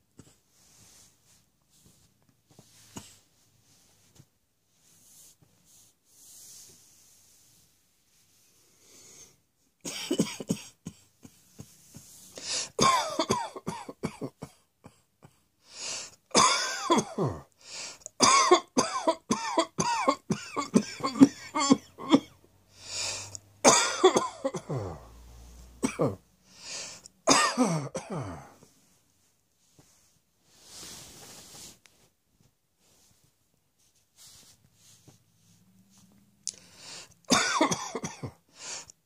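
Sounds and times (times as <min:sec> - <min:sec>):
person coughing: 0:09.8 - 0:11.4, 0:12.4 - 0:15.4, 0:16.3 - 0:17.5, 0:18.2 - 0:22.4, 0:23.6 - 0:25.2, 0:25.8 - 0:26.2, 0:27.2 - 0:28.6, 0:37.3 - 0:38.4.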